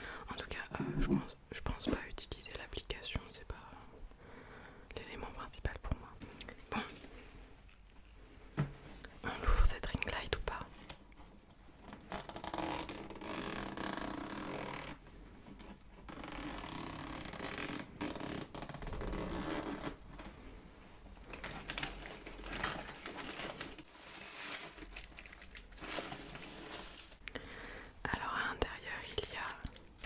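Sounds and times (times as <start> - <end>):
packaging rustling and scraping: 21.1 - 27.2.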